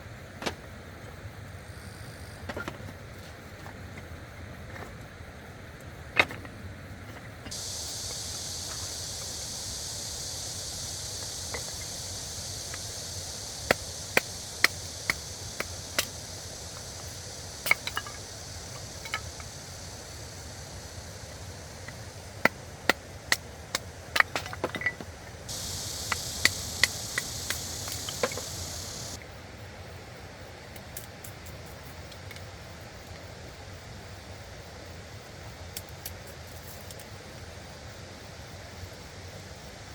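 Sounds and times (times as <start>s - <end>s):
steady high hiss: 0.0s - 39.9s
stream water rushing: 25.5s - 29.2s.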